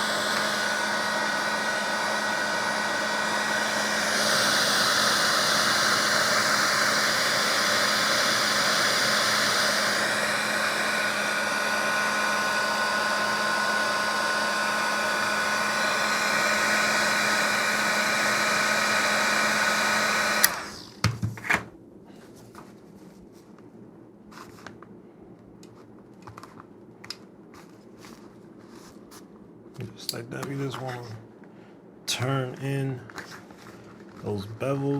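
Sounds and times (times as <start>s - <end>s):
heat gun humming: 0.0s - 21.2s.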